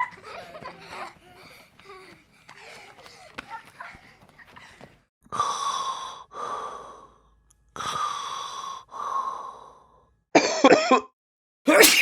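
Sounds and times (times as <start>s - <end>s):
person breathing heavily: 11.7s - 12.0s.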